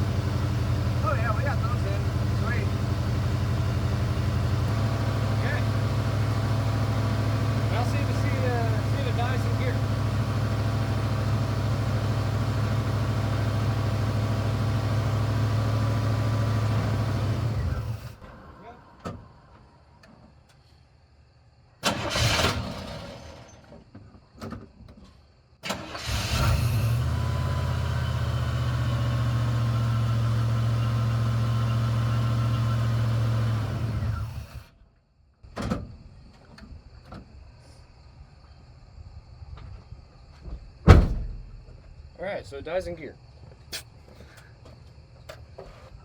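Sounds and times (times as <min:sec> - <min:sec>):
pickup engine cranking and running: 0:00.0 - 0:20.6, 0:21.8 - 0:23.9, 0:25.6 - 0:34.8.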